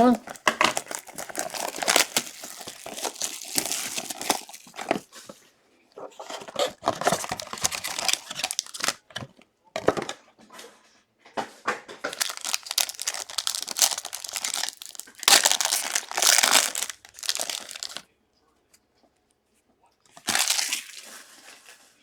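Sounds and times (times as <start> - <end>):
plastic wrapping crackling: 0.0 - 5.2, 6.3 - 9.0, 12.0 - 18.0, 20.2 - 21.8.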